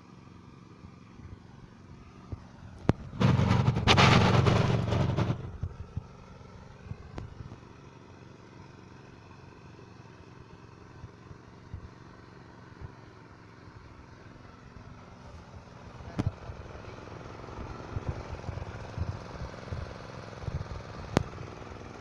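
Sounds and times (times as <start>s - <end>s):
engine humming: 0.0s - 22.0s
threshing machine rushing and rattling: 2.8s - 6.9s.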